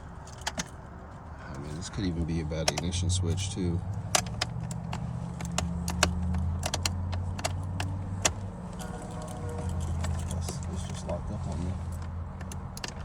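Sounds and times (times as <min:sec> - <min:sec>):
keys jangling: 0:00.2 - 0:00.8, 0:04.0 - 0:11.1
key clicking in ignition lock: 0:00.3 - 0:00.8, 0:03.9 - 0:11.0, 0:11.9 - 0:13.0.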